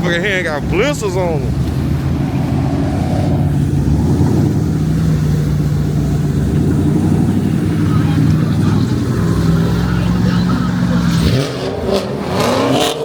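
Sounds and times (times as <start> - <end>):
car engine running loudly: 0.0 - 13.0.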